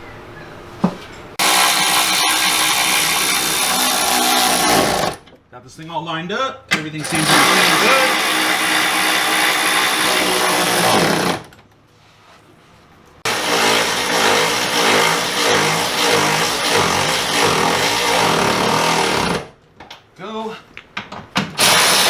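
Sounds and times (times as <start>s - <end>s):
handheld power tool running: 1.4s - 5.2s, 7.0s - 11.5s, 13.2s - 19.5s, 21.6s - 22.0s.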